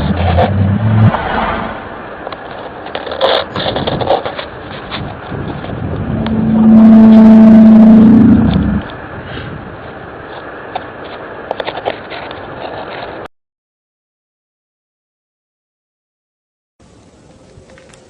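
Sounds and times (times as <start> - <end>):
crackling noise: 0.0 - 13.3, 16.8 - 18.0
low horn-like drone: 5.9 - 8.9.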